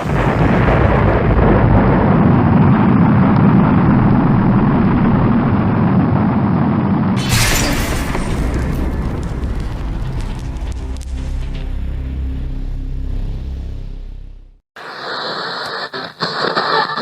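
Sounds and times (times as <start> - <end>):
rocket launch roar: 0.0 - 11.7
music: 9.9 - 14.6.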